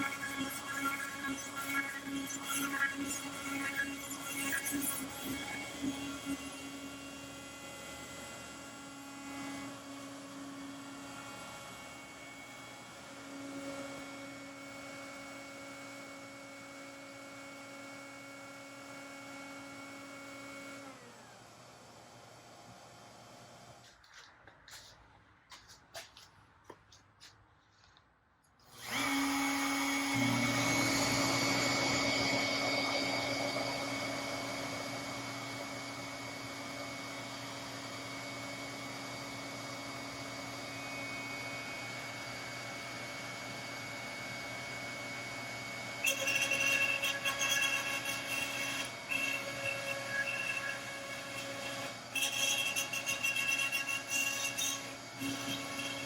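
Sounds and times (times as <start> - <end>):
router bit cutting wood: 0.0 - 16.4, 28.7 - 56.0
router spindle motor whine: 0.0 - 23.8, 28.7 - 56.0.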